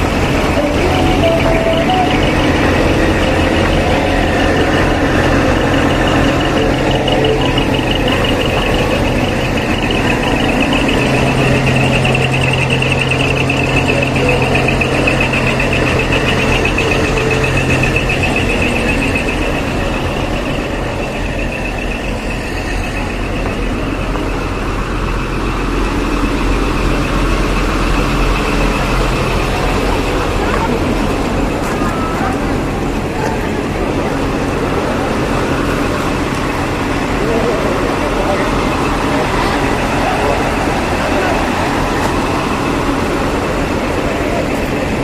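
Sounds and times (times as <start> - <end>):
high warbling tone: 0.0 - 23.3
low held tone: 0.0 - 44.4
diesel truck engines running: 0.0 - 45.0.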